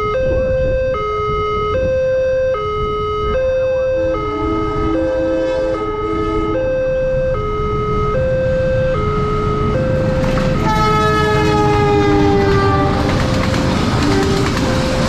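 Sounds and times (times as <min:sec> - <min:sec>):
two-tone level-crossing siren: 0:00.0 - 0:13.2
train horn: 0:03.3 - 0:07.4, 0:09.1 - 0:15.0
train rumbling and clattering: 0:03.7 - 0:15.0.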